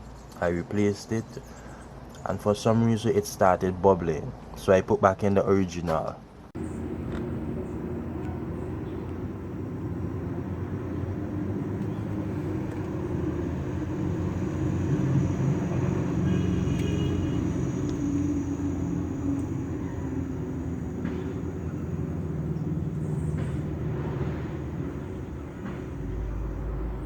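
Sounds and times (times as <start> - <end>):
car engine idling: 6.6 - 27.0.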